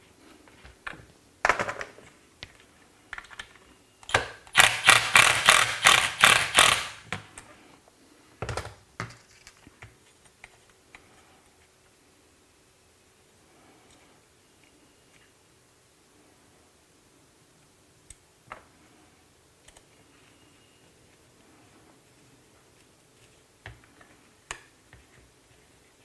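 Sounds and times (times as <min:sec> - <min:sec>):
rapid sharp clicking: 0:04.5 - 0:07.1
small tools clicking and rattling: 0:04.5 - 0:07.1.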